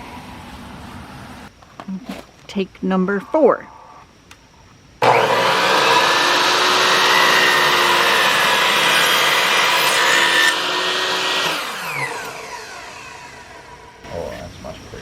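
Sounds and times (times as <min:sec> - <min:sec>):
electric miter saw cutting: 0:05.0 - 0:14.0.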